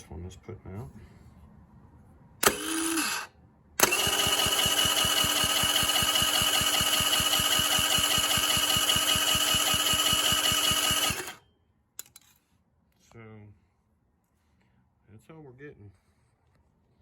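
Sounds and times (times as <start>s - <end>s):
starter cranking engine: 2.4s - 11.4s
starter whine: 2.4s - 11.4s.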